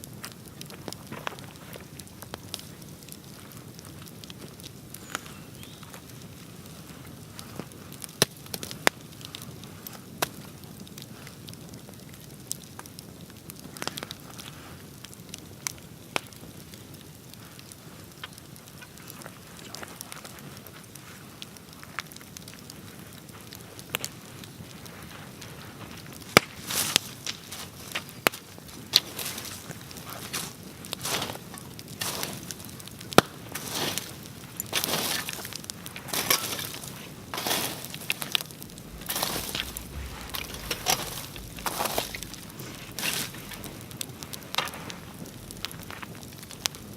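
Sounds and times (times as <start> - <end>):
bonfire crackling: 0.0 - 46.9
rush of flames: 26.6 - 46.9.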